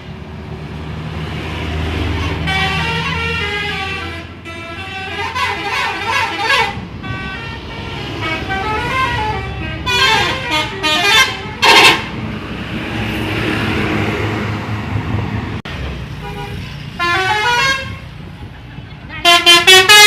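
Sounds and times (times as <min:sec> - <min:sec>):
musical air horns playing melodies: 0:02.1 - 0:12.2, 0:16.3 - 0:18.1, 0:19.2 - 0:20.0.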